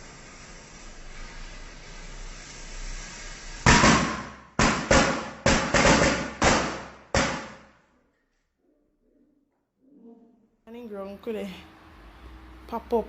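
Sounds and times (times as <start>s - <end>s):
steady hiss: 0.0s - 7.6s
firecrackers banging: 3.5s - 7.7s.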